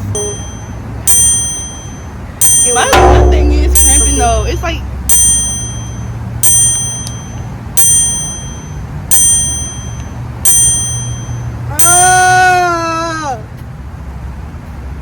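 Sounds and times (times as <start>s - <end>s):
steady low hum: 0.0s - 8.7s
high bell-like chime: 0.0s - 12.0s.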